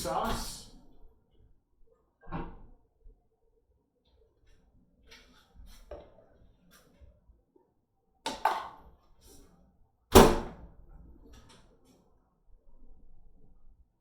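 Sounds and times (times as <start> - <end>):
dishes knocking and clattering: 8.3 - 8.8.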